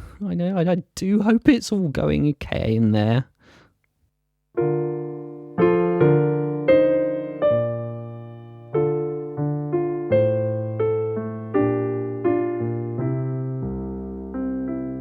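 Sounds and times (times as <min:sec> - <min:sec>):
gentle piano chords: 0:04.6 - 0:15.0.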